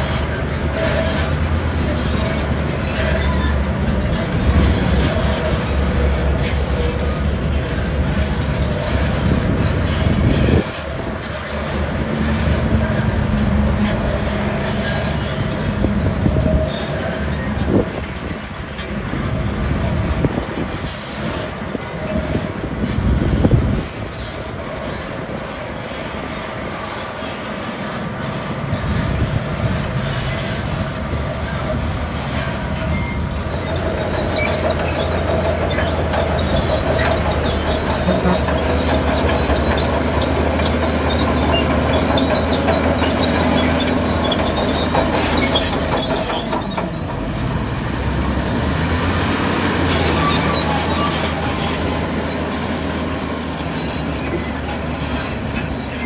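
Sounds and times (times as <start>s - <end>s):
bulldozer diesel engine: 0.0s - 56.0s
steel tracks clanking and squeaking: 0.0s - 56.0s.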